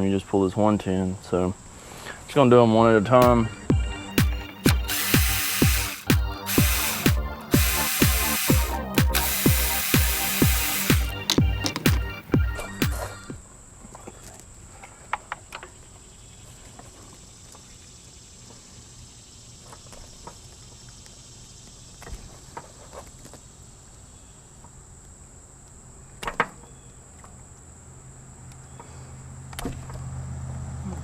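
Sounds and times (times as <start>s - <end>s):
hand tools clicking and knocking: 4.2s - 12.4s.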